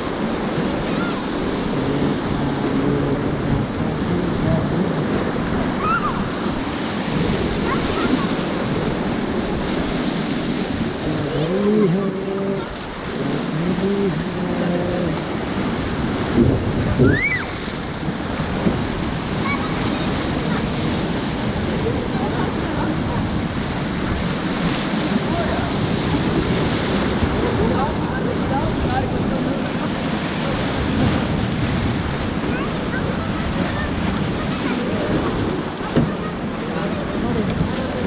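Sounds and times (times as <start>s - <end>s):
river rapids rushing: 0.0s - 38.0s
wind on microphone: 0.0s - 38.0s.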